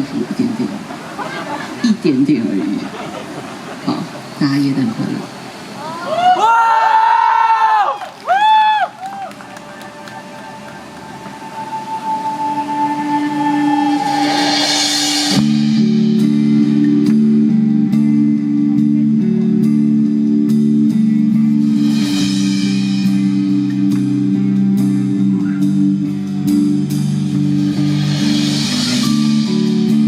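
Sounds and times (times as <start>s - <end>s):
guitar and keyboard chords: 10.5s - 30.0s
cymbal swells: 10.8s - 17.0s.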